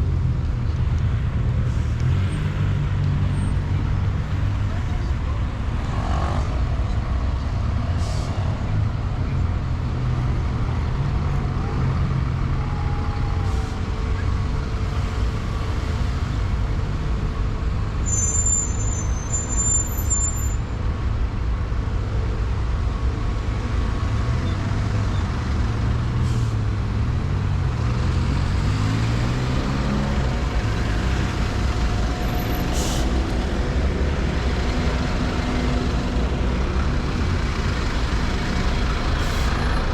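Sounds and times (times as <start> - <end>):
rumble of passing trucks and buses: 0.0 - 39.9
heavy engine pulling away: 3.6 - 12.6, 27.8 - 39.9
high squeal: 18.0 - 20.6.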